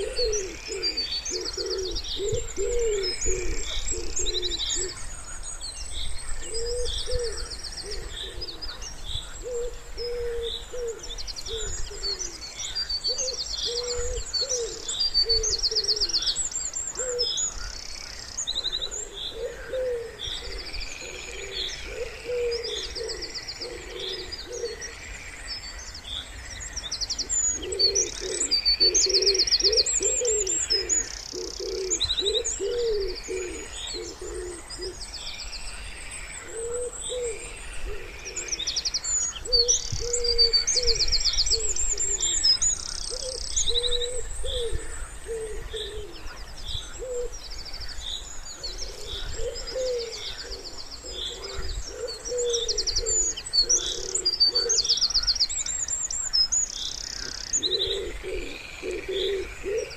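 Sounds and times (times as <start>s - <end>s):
wood pigeons cooing: 0.0s - 5.1s, 6.4s - 17.8s, 18.5s - 25.0s, 27.2s - 35.1s, 36.0s - 55.2s, 57.0s - 59.9s
songbirds trilling and chirping: 0.0s - 59.9s.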